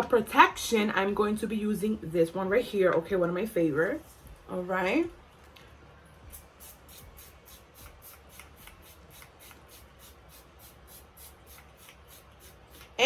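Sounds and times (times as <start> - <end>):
spray bottle hissing: 6.3 - 13.0.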